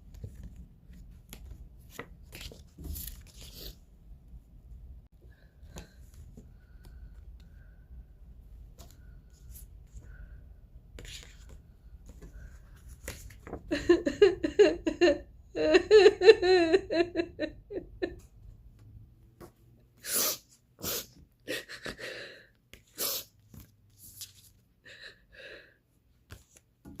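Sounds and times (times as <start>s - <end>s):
woman sobbing: 13.4s - 18.2s, 21.4s - 22.5s
sharp sniffs: 20.0s - 21.2s, 22.8s - 23.4s.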